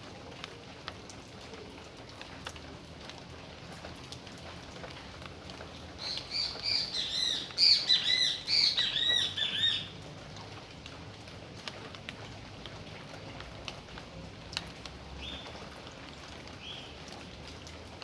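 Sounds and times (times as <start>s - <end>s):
steady rain falling: 0.0s - 18.0s
bird chirping: 6.0s - 9.9s.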